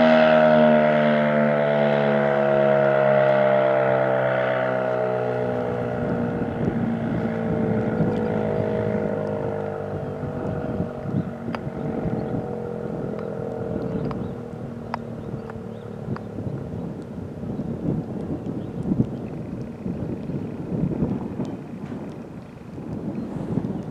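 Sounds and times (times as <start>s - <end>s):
warning siren winding down: 0.0s - 16.8s
wind buffeting microphone: 0.0s - 23.9s.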